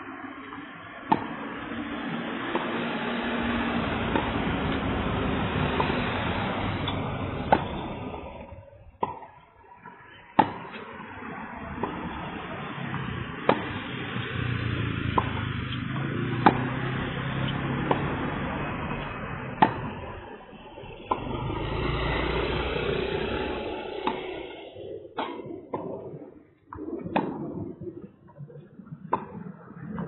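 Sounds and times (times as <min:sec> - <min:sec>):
steady background noise: 0:00.0 - 0:30.0
tennis ball hit by rackets: 0:01.0 - 0:01.6, 0:02.5 - 0:02.8, 0:04.1 - 0:05.0, 0:05.6 - 0:10.9, 0:11.7 - 0:12.1, 0:12.7 - 0:20.4, 0:21.1 - 0:21.3, 0:23.5 - 0:24.5, 0:25.2 - 0:25.9, 0:27.1 - 0:27.4, 0:29.1 - 0:29.4.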